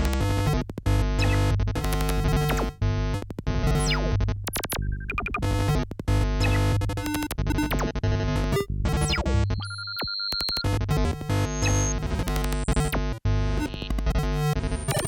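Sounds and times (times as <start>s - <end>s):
harsh buzzy synthesized tones: 5.3s - 15.0s.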